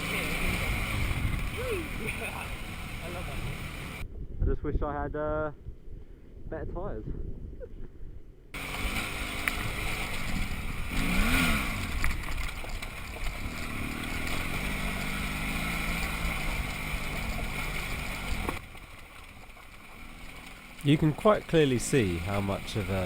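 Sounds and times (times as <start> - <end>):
motorcycle engine revving: 0.0 - 4.0, 8.6 - 23.0
wind rush on microphone: 0.4 - 8.4.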